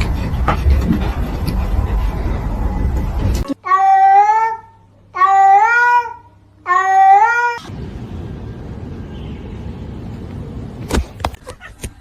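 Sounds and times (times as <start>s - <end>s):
cat meowing: 5.2s - 7.7s.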